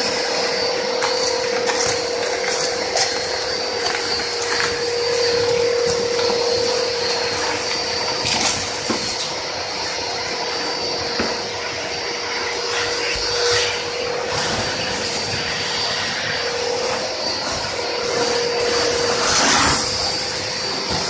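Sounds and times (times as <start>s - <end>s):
industrial vacuum cleaner whining: 0.0s - 21.0s.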